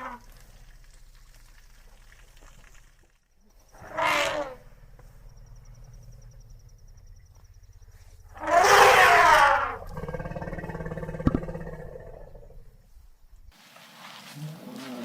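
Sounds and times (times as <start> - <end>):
elephant trumpeting: 3.8 - 4.6, 8.4 - 11.8.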